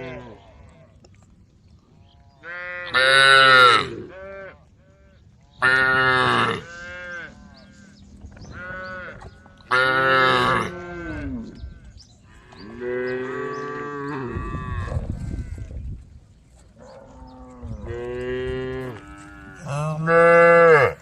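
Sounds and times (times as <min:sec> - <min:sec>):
cows mooing: 0:02.4 - 0:04.6, 0:05.6 - 0:15.7, 0:16.8 - 0:21.0.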